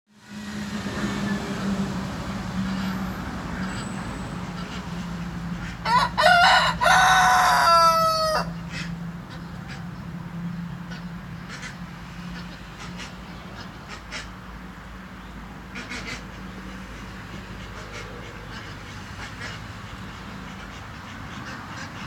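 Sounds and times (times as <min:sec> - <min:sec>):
rooster crowing: 0:05.8 - 0:08.6.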